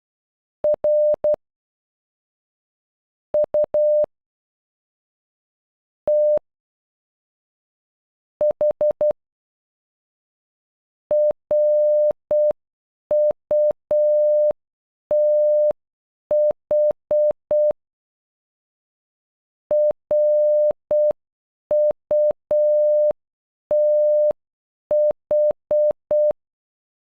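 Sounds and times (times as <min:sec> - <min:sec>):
morse code beeps: 0:00.7 - 0:01.4, 0:06.1 - 0:06.4, 0:19.7 - 0:26.4.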